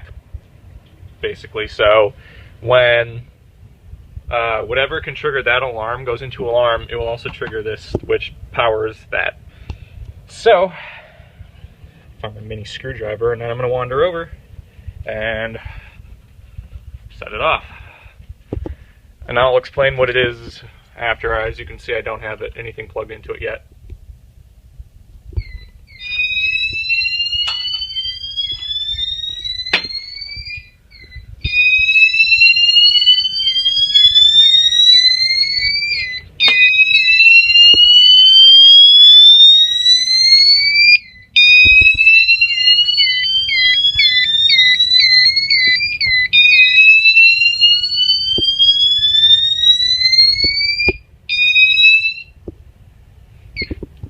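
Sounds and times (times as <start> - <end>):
rapid chirping: 25.4 - 52.2
alarm whoop tone: 25.4 - 52.4.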